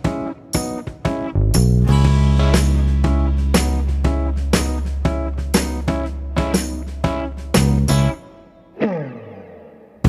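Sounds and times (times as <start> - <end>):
guitar chords strummed: 0.0 - 10.0
deep sustained bass line: 1.4 - 5.5.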